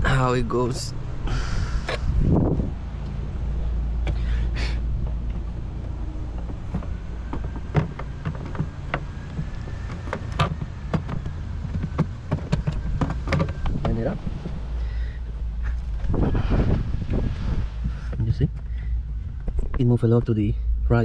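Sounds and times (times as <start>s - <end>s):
steady low rumble: 0.0s - 21.0s
plastic taillight clicks and knocks: 5.2s - 14.7s.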